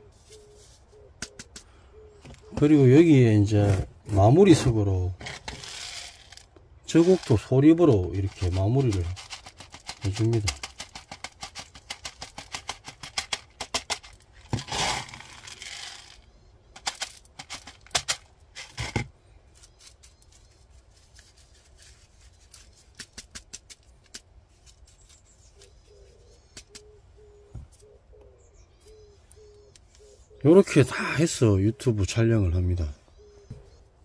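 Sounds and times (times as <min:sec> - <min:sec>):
granules rattling against pot: 0:05.2 - 0:19.0.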